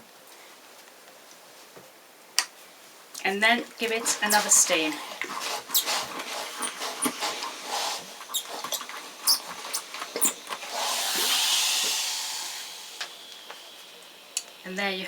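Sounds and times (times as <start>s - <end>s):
steam hissing: 3.8s - 15.0s.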